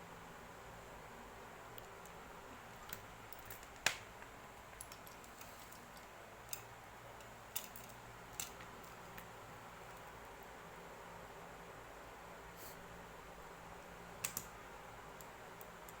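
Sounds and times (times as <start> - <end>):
faint hiss: 11.8 - 14.6.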